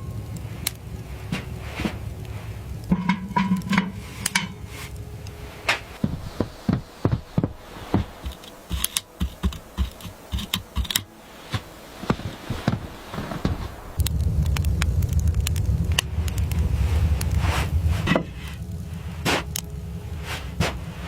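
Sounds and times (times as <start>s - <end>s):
sharp clicks and light knocks: 7.4s - 11.1s.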